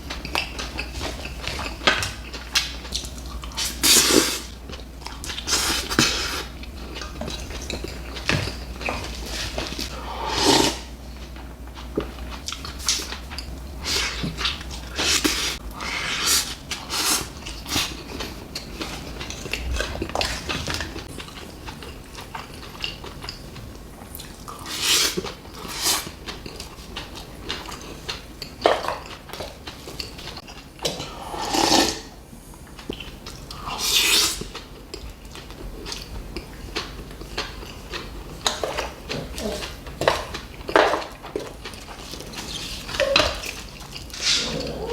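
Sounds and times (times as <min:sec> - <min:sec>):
chewing and slurping food: 0:00.0 - 0:44.9.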